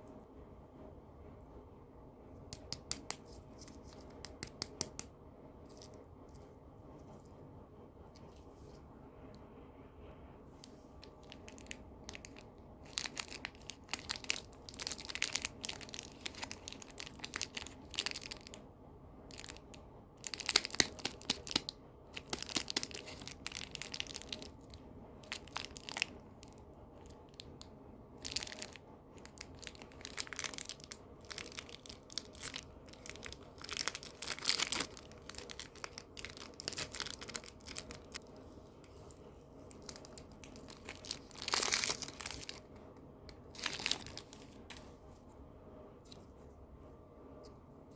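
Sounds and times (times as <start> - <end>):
wrappers crinkling and tearing: 11.0 - 18.6, 19.3 - 42.7, 43.3 - 44.9.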